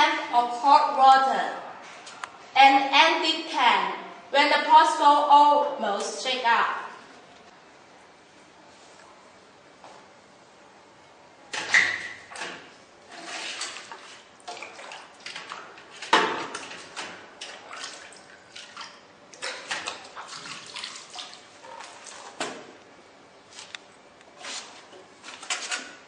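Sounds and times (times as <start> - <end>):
water splashing and sloshing: 11.6 - 22.8.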